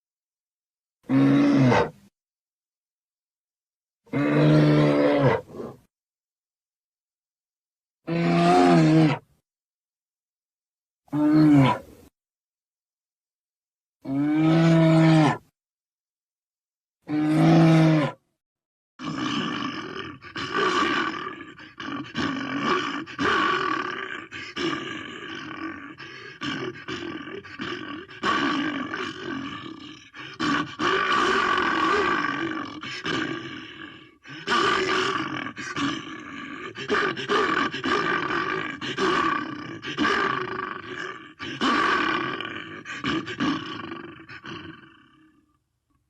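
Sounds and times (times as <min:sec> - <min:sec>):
creature growling roars and grunts: 0:01.0 - 0:02.0, 0:04.1 - 0:05.9, 0:08.0 - 0:09.3, 0:14.0 - 0:15.5, 0:17.1 - 0:18.2, 0:19.0 - 0:45.5.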